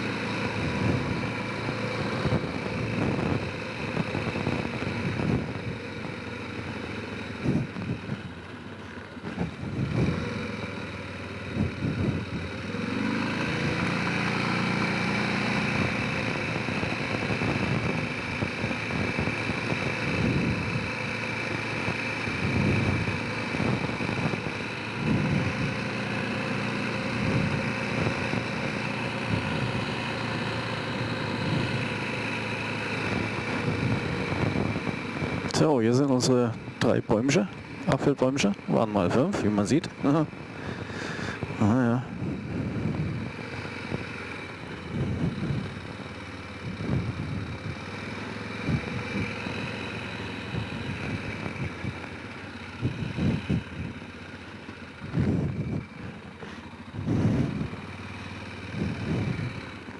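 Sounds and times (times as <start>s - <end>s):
quad bike engine revving: 0.0s - 8.2s, 9.2s - 59.9s.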